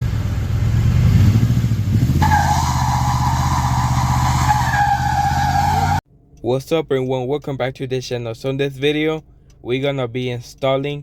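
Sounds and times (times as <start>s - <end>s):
vehicle engine running: 0.0s - 6.0s.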